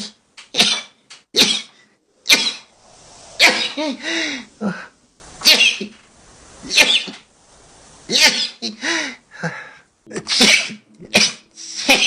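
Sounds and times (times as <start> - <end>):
person sneezing: 0.0 - 2.7, 3.4 - 5.9, 6.7 - 7.2, 8.1 - 8.8, 10.1 - 12.0.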